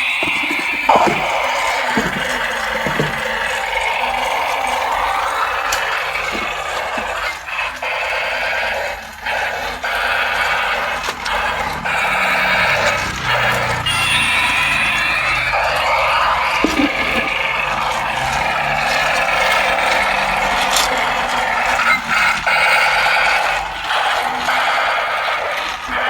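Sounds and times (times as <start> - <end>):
toy electronic sound effects: 0.0 - 26.0.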